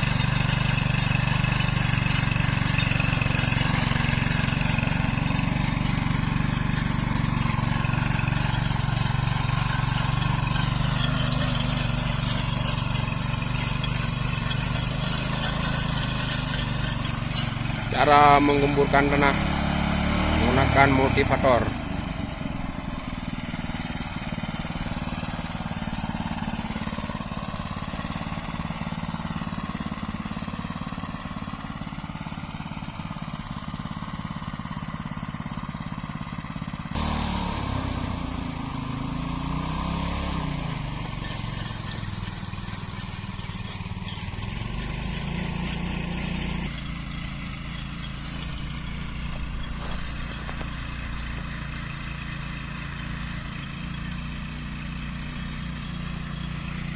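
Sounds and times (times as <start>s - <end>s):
small tiller engine running: 0.0s - 56.9s.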